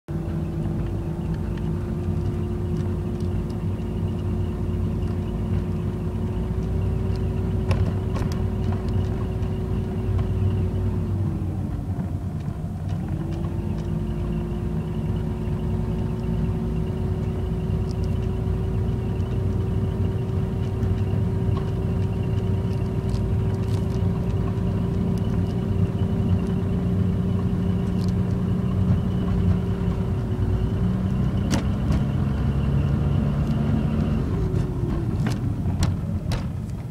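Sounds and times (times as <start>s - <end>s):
rotary engine running: 0.1s - 36.9s.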